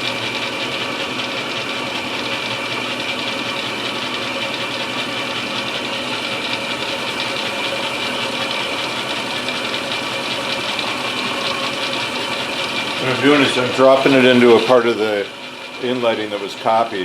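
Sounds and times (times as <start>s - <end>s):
milling machine running: 0.0s - 17.0s.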